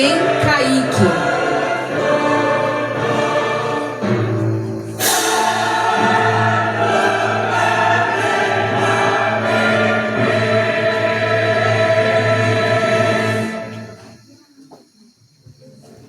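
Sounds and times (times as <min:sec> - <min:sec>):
choir singing over music: 0:00.0 - 0:14.2
cymbal crash: 0:02.6 - 0:10.2.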